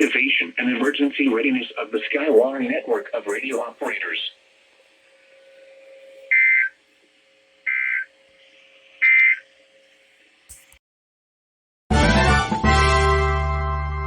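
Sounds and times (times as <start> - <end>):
two-tone digital data bursts: 6.3 - 6.8, 7.6 - 8.1, 9.0 - 9.4.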